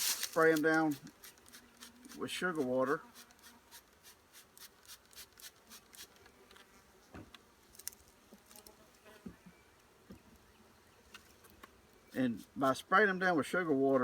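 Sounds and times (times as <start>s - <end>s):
bees buzzing faintly: 0.0s - 4.8s, 5.5s - 12.6s.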